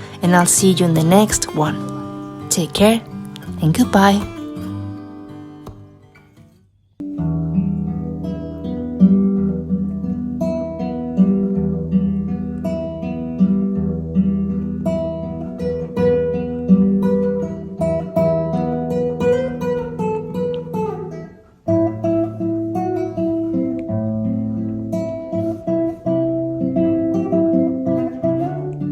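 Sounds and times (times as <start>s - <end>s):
acoustic guitar music: 0.0s - 28.9s.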